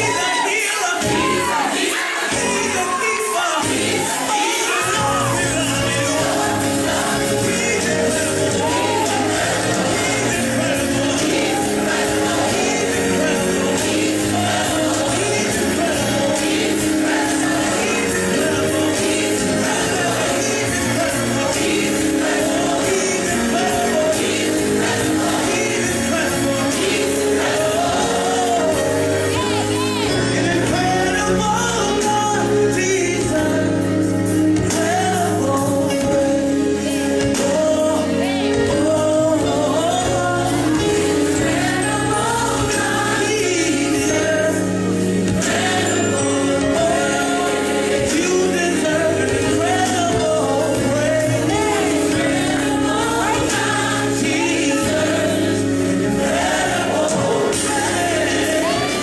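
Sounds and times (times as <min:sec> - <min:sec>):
band playing gospel music: 0:00.0 - 0:59.0
choir singing: 0:00.0 - 0:59.0
lead voice singing: 0:00.0 - 0:59.0.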